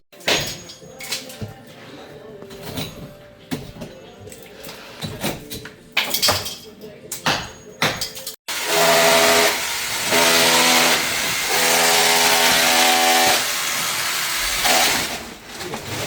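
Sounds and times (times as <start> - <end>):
concrete saw grinding: 8.5 - 16.0.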